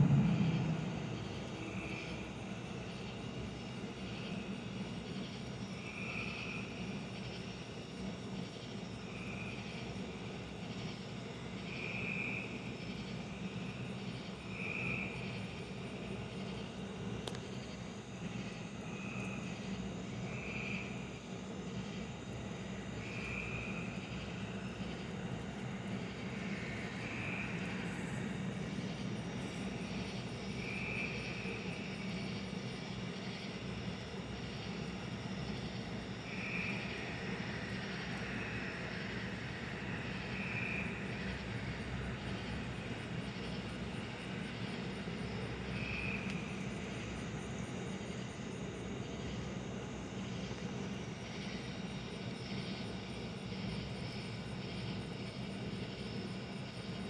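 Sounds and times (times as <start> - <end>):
distant machinery rumble: 0.0 - 3.6.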